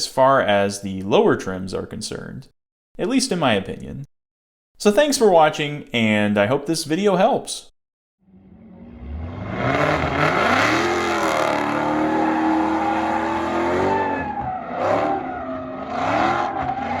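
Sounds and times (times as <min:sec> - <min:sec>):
car engine revving: 0:08.3 - 0:17.0.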